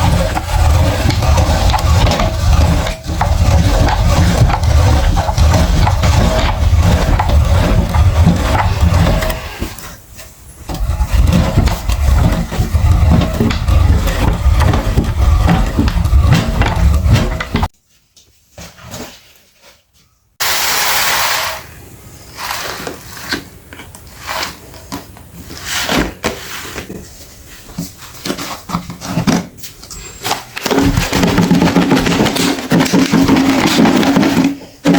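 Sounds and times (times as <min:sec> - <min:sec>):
electric meat grinder running: 0:20.4 - 0:21.7
loud hiss: 0:20.4 - 0:21.8.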